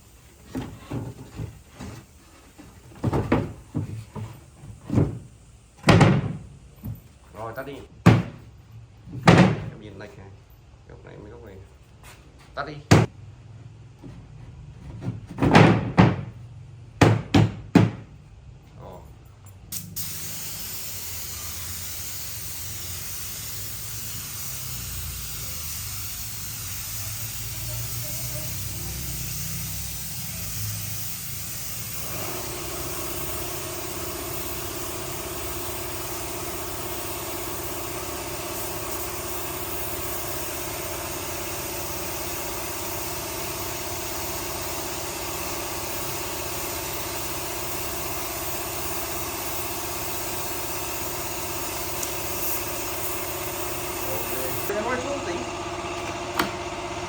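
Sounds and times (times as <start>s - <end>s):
workshop machine hissing: 0.0s - 5.8s, 19.7s - 57.0s
loud knocks: 8.0s - 8.4s, 15.1s - 16.3s, 17.0s - 18.1s.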